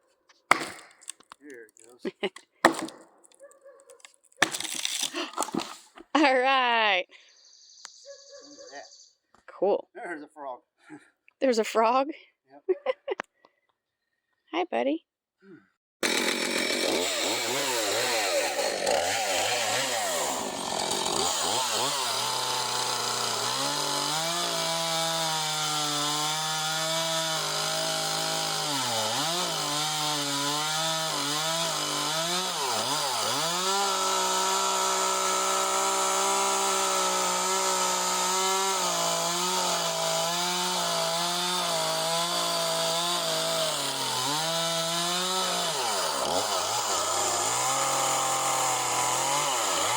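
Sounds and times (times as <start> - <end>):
chainsaw cutting through log: 0.5 - 2.0, 2.6 - 3.1, 4.4 - 5.8, 16.0 - 49.9.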